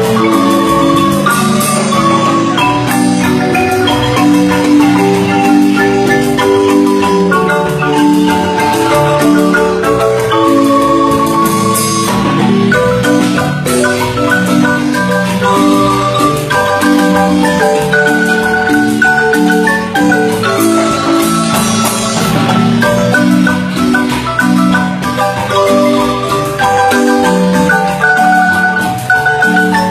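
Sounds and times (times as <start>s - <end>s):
marimba music: 0.0s - 29.9s.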